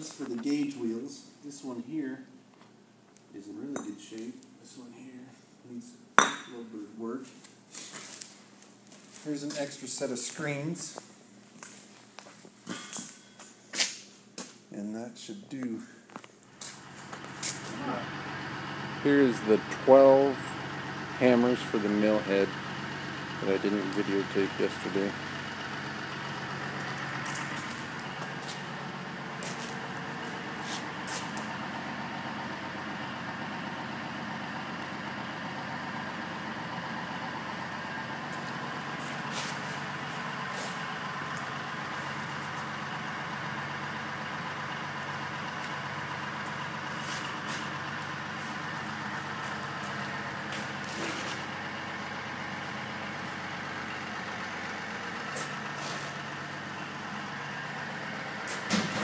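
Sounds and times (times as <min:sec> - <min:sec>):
engine idling: 0:16.7 - 0:59.0.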